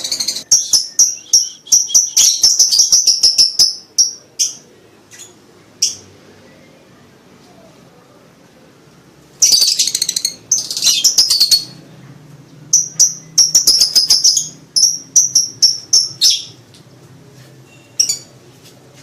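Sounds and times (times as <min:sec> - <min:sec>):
lovebird chattering and chirping: 0:00.0 - 0:06.1, 0:09.4 - 0:11.8, 0:12.7 - 0:16.6, 0:17.7 - 0:18.3.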